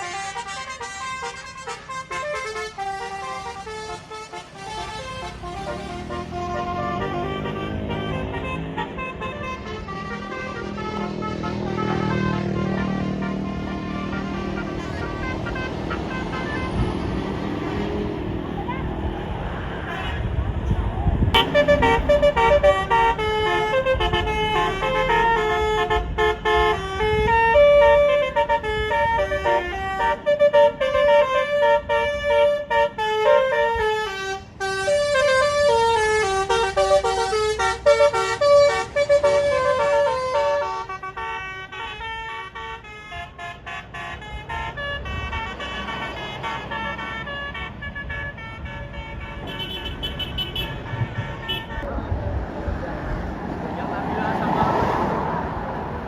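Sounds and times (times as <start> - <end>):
multi-tone air horn melody: 0.0 - 19.1, 21.4 - 51.9.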